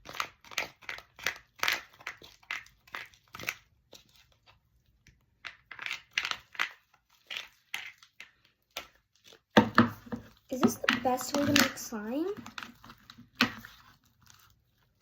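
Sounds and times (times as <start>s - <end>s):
slime crackling squelches: 0.0s - 15.0s.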